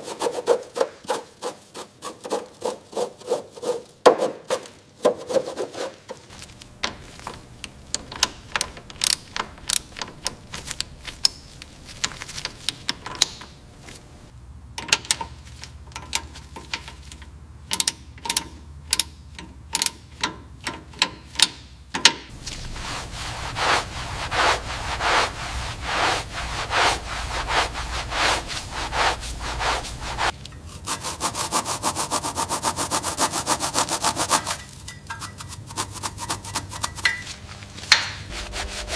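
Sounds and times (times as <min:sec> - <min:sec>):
scraping and rubbing strokes: 0:00.0 - 0:06.4, 0:22.3 - 0:38.9.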